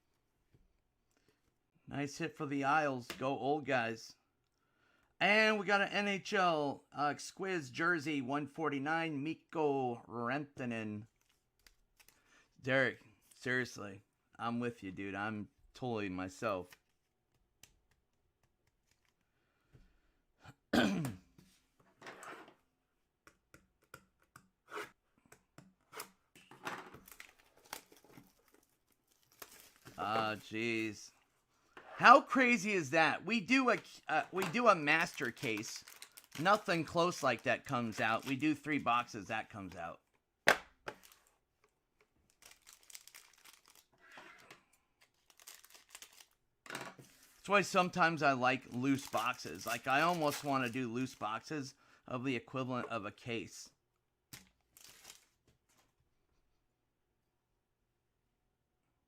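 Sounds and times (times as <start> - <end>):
man clearing his throat: 20.5 - 21.3
trading cards and wrappers rustling: 26.4 - 31.2, 32.0 - 39.3, 40.9 - 41.4, 42.0 - 46.4, 47.0 - 51.5, 54.4 - 55.9.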